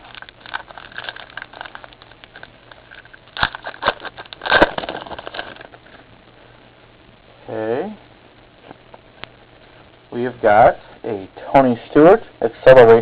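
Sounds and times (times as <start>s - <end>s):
foil wrapper crinkling and tearing: 0.0s - 6.0s.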